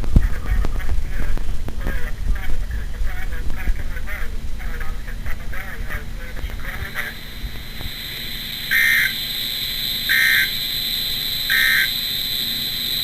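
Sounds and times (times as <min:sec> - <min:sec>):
low hum: 0:00.0 - 0:13.0
steady high whine: 0:00.0 - 0:13.0
warbling digital data bursts: 0:00.0 - 0:13.0.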